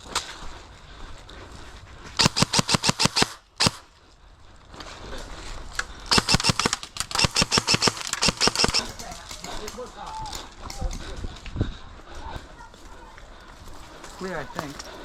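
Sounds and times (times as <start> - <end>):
airsoft guns firing: 2.2 - 3.8, 6.1 - 9.8.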